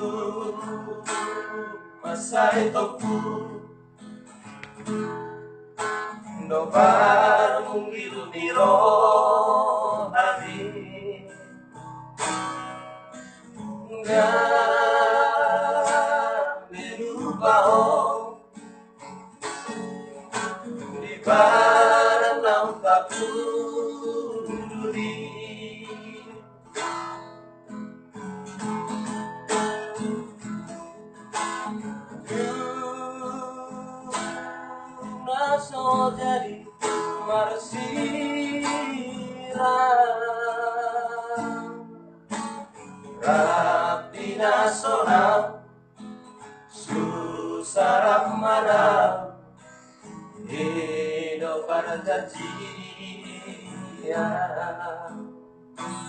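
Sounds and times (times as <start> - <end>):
person singing: 0.0 - 3.6, 6.4 - 11.4, 13.9 - 18.4, 21.0 - 26.4, 43.2 - 45.6, 46.8 - 49.3, 50.5 - 55.2
acoustic guitar strums: 0.0 - 56.0.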